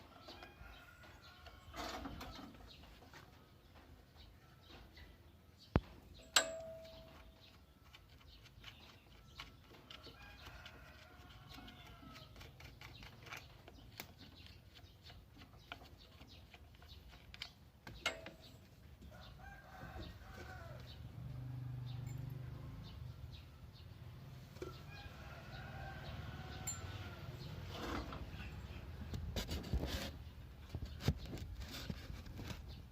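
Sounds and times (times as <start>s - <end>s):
rooster crowing: 19.1s - 22.0s, 24.9s - 27.3s.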